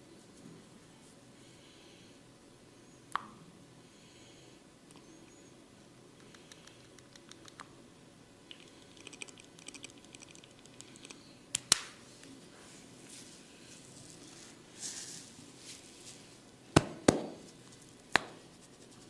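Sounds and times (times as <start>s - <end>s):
hands clicking and tapping: 18.1s - 18.4s.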